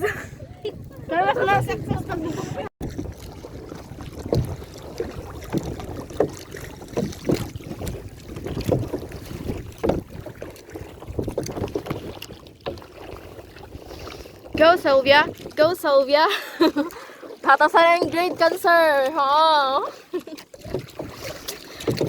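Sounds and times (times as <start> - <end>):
paddle splashing in water: 0.3 - 22.0.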